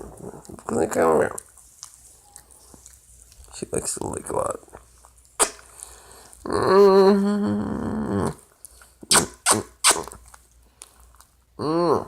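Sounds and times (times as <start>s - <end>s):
small dog growling: 6.4s - 8.4s.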